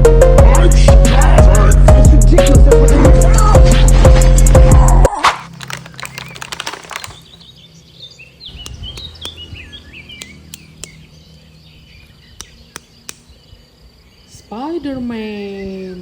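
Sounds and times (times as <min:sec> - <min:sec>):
sharp clicks: 0:05.5 - 0:07.5, 0:08.6 - 0:09.5, 0:10.2 - 0:11.0, 0:12.4 - 0:13.4
rapid rattling clicks: 0:05.6 - 0:07.4
faint bird-like chirps: 0:07.2 - 0:16.0.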